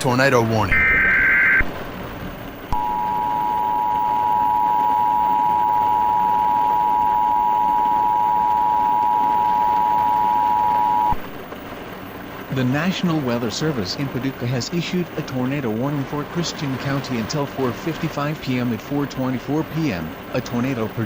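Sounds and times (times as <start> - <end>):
warbling data tones: 0.7 - 1.7, 2.7 - 11.2
two-tone alarm chord: 2.7 - 11.2.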